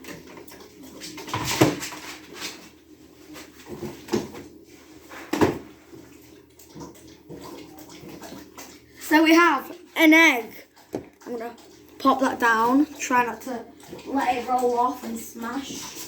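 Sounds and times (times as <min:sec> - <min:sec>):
knocks and clatter of objects: 0:05.1 - 0:05.7.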